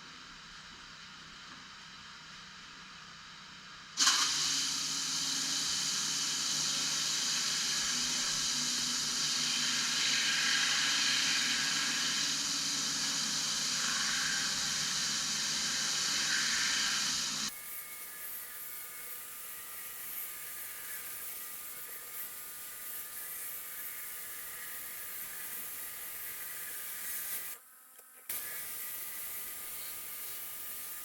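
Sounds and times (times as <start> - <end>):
pressure washer spraying water: 28.3 - 31.0.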